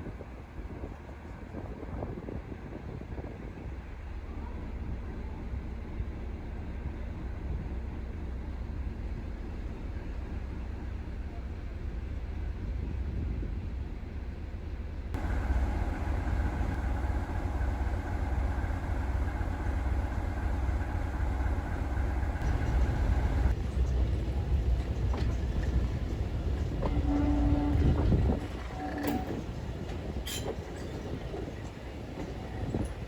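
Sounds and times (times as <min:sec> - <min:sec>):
diesel train engine rumble: 0:00.0 - 0:33.0.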